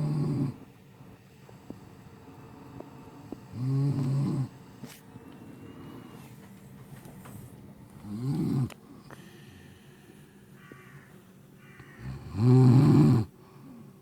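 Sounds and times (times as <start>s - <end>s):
woman snoring: 0.0s - 0.6s, 3.5s - 4.6s, 8.0s - 8.8s, 12.0s - 13.3s.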